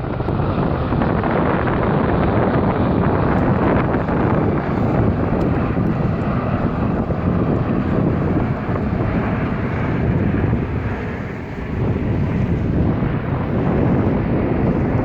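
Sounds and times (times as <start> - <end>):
aircraft engine rushing: 0.0 - 15.0
wind buffeting microphone: 0.0 - 15.0.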